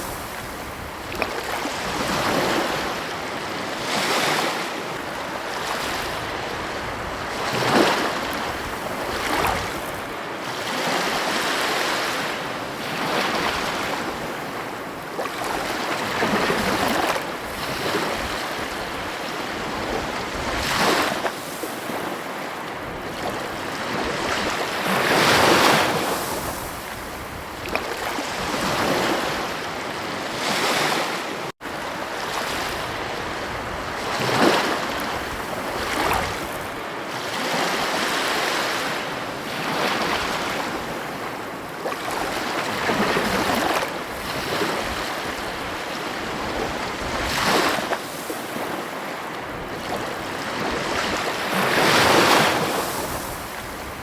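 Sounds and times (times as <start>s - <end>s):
ocean waves breaking on beach: 0.0s - 54.0s.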